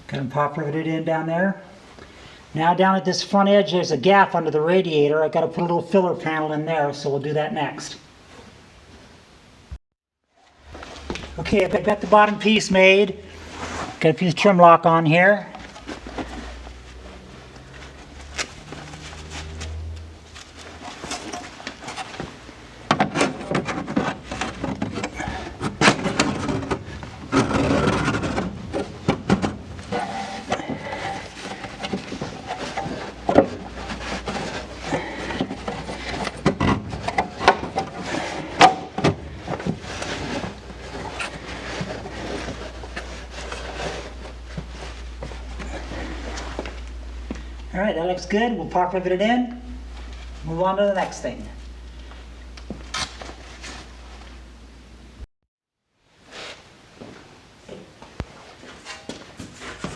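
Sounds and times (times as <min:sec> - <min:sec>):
sheet metal knocking and scraping: 0:22.9 - 0:39.8.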